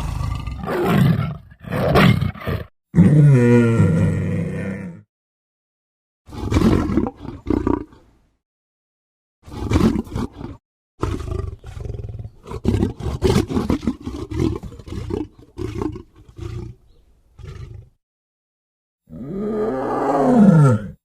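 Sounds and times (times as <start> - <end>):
wild animal growling and roaring: 0.0 - 5.1, 6.3 - 8.0, 9.4 - 16.8, 17.4 - 18.0, 19.1 - 21.0.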